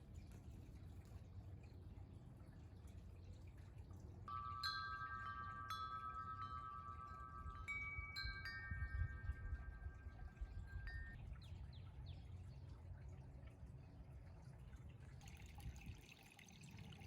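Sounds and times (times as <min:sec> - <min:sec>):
wind chimes ringing: 0:04.3 - 0:11.2.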